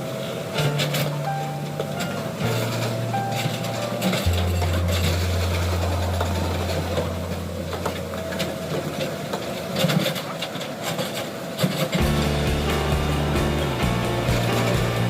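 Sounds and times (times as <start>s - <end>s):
diesel engine running: 4.2s - 9.5s, 12.0s - 15.0s.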